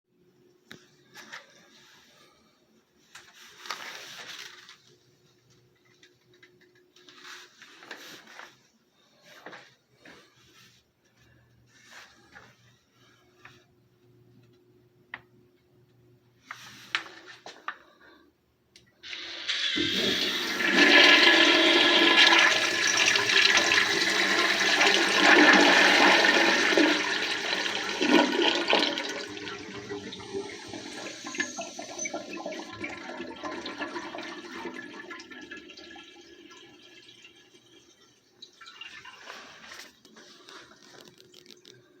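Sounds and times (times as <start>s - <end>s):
toilet flushing: 19.0s - 39.9s.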